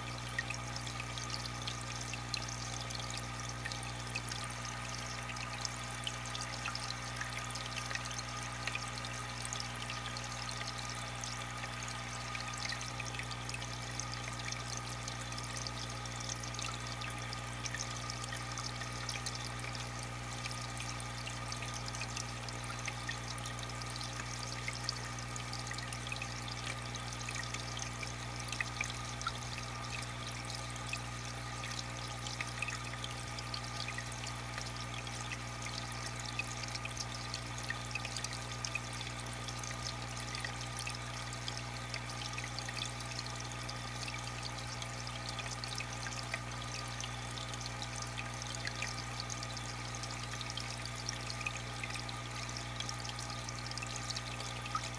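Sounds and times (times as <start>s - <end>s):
water pouring and splashing: 22.3s - 54.9s.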